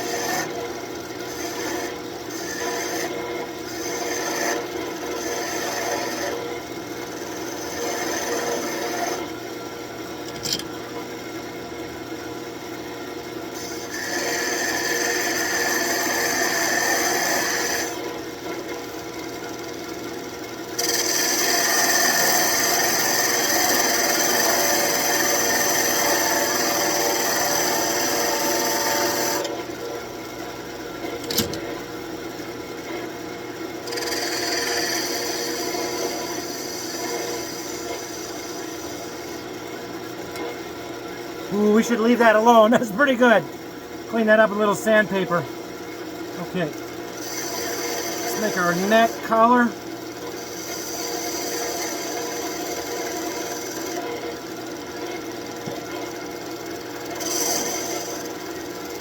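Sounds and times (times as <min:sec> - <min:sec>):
gouge cutting wood on lathe: 0:00.0 - 0:00.6, 0:01.2 - 0:06.4, 0:07.1 - 0:09.2, 0:13.6 - 0:18.1, 0:20.8 - 0:29.5, 0:33.8 - 0:39.5, 0:47.1 - 0:49.6, 0:50.3 - 0:54.1, 0:57.1 - 0:58.9
lathe humming: 0:01.3 - 0:03.1, 0:03.8 - 0:06.4, 0:07.1 - 0:09.2, 0:13.9 - 0:18.0, 0:20.8 - 0:29.5, 0:33.8 - 0:39.5, 0:41.3 - 0:49.7, 0:57.2 - 0:58.3.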